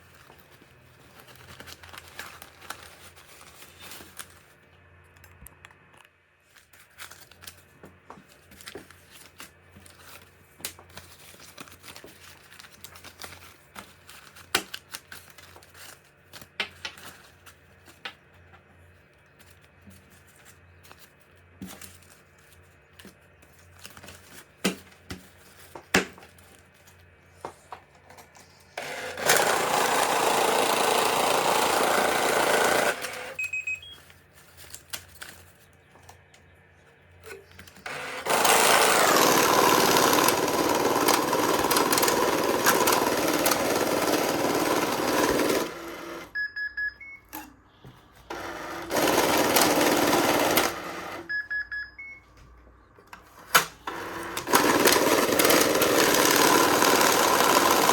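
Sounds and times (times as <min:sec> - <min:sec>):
money-counting machine running: 0:28.8 - 0:33.4, 0:37.8 - 0:46.3, 0:48.3 - 0:51.3, 0:53.8 - 0:57.9.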